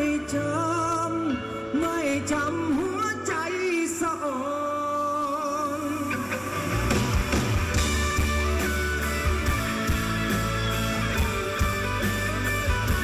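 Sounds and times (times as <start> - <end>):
rock band music: 5.7 - 13.0.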